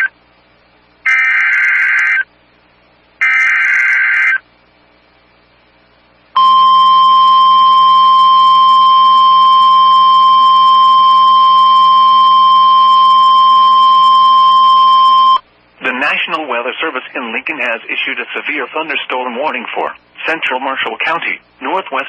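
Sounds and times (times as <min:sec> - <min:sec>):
steady alarm beep: 0:06.4 - 0:15.4.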